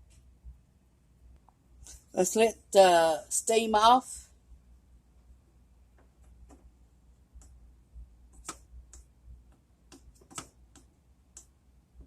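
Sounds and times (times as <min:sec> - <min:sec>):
faint light clicks and ticks: 0:08.4 - 0:11.6.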